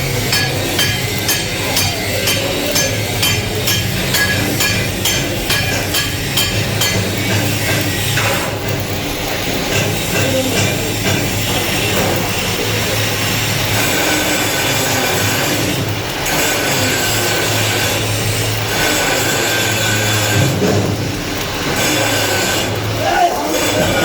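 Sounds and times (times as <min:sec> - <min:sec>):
welding arc crackling and sizzling: 0:00.0 - 0:24.0.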